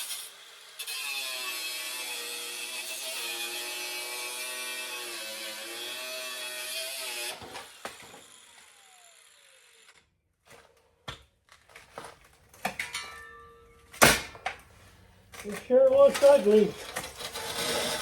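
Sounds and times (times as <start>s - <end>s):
power tool whining: 0.0s - 10.1s, 15.6s - 18.0s
sharp metal clang: 12.8s - 14.4s.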